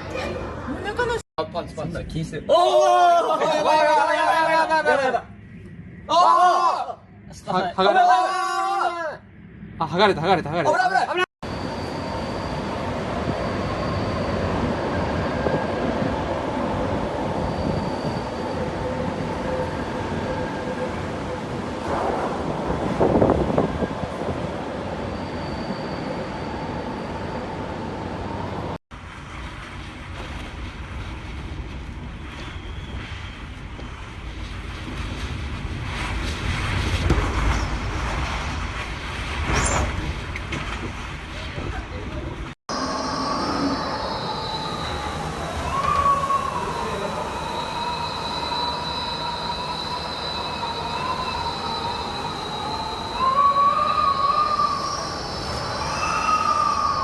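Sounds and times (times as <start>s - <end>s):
strong wind blowing: 12.0s - 28.8s
faint thin whistling: 32.4s - 33.4s.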